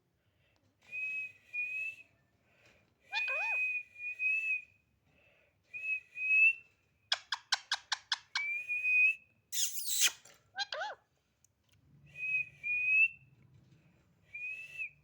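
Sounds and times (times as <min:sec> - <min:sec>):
parrot whistling: 0:03.1 - 0:03.8, 0:09.6 - 0:11.0.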